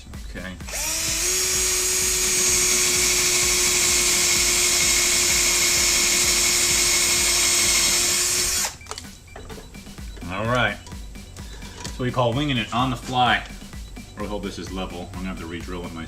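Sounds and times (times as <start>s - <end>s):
power drill whining: 0.6s - 12.0s.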